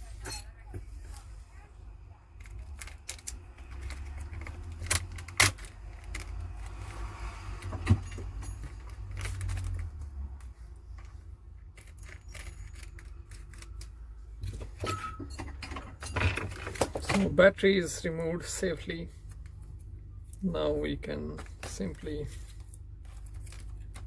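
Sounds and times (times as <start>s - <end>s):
phone battery prying clicks and scraping: 2.4s - 9.9s, 11.0s - 14.9s.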